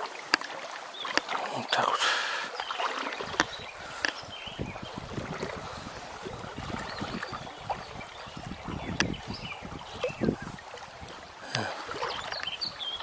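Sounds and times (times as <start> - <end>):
river running over riffle: 0.0 - 13.0
wind buffeting microphone: 3.2 - 13.0.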